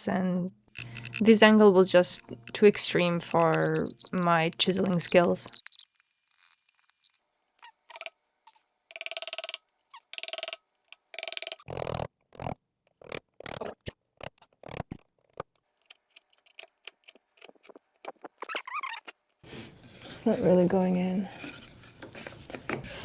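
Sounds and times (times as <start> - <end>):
squeaky scraping on wood: 0.8 - 8.1, 8.9 - 11.6, 15.8 - 19.3.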